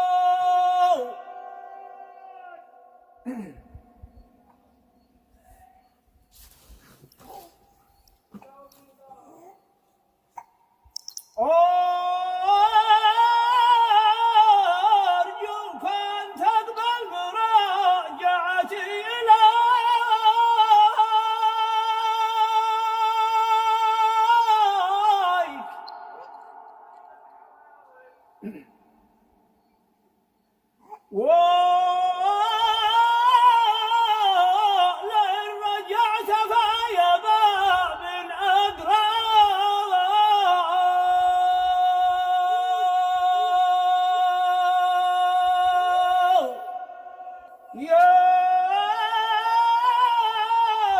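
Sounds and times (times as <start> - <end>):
man chanting: 0.0 - 3.5, 11.4 - 28.7, 31.1 - 50.9.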